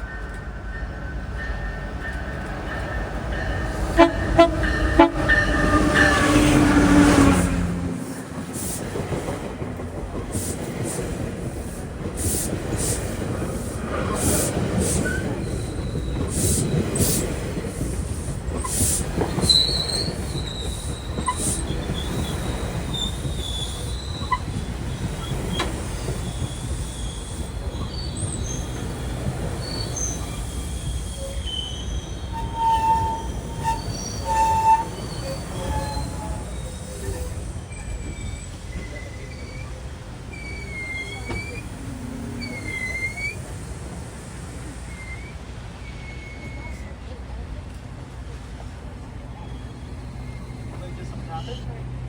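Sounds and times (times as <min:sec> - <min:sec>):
train wheel clatter: 0:01.4 - 0:48.8
locomotive horn chord: 0:03.7 - 0:06.6
high wheel squeal: 0:14.1 - 0:17.3, 0:18.6 - 0:43.6, 0:44.9 - 0:46.9.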